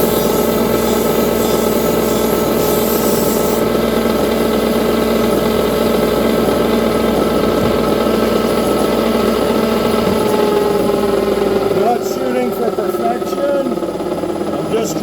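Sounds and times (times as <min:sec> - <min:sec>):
wire wheel scrubbing metal: 0:00.0 - 0:11.0
bench grinder motor humming: 0:00.0 - 0:15.0.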